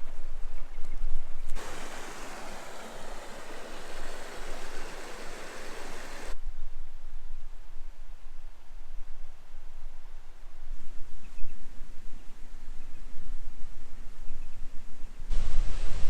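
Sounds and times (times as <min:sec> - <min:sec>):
rushing water: 0:01.6 - 0:06.4
wind rumbling on microphone: 0:01.6 - 0:06.4.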